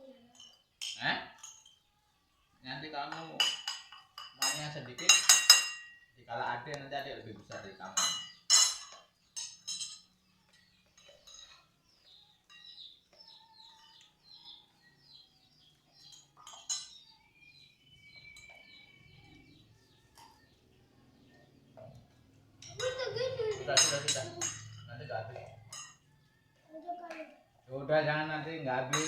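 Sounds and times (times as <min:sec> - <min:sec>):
faint high chirping: 0:00.0 - 0:29.0
spoon clinking on plate: 0:03.1 - 0:06.1, 0:07.5 - 0:11.7, 0:16.0 - 0:17.5, 0:22.6 - 0:26.1.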